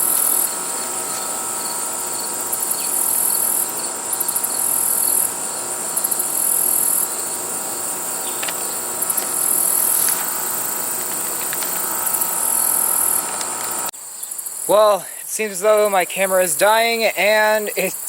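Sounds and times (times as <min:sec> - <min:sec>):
high-pitched insect call: 0:00.0 - 0:14.8.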